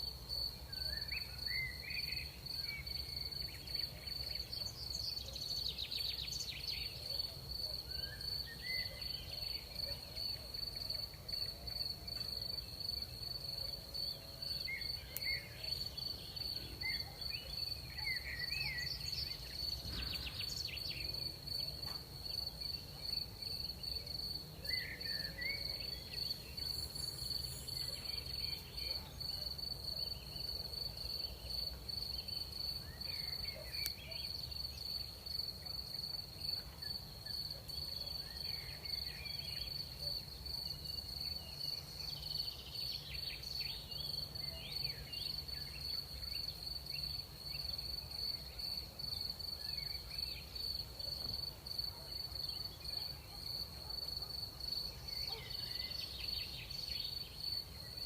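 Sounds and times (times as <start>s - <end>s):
crickets trilling: 0.0s - 58.0s.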